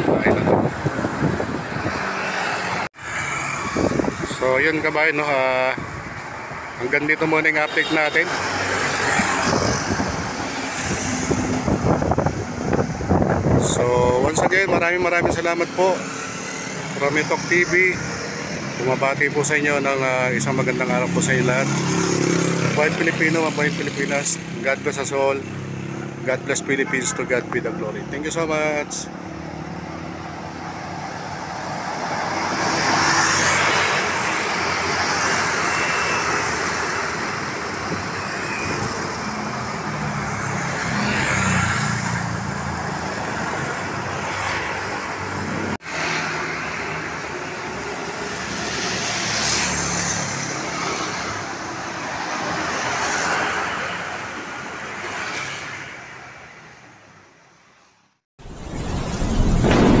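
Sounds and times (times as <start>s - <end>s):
street traffic noise: 0.0s - 60.0s
loud boom-like burst: 58.4s - 60.0s.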